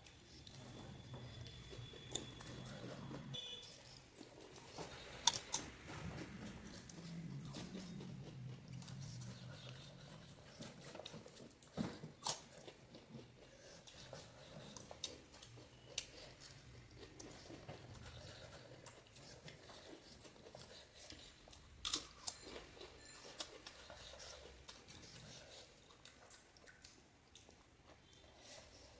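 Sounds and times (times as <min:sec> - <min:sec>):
crunching and chewing: 0:00.0 - 0:28.9.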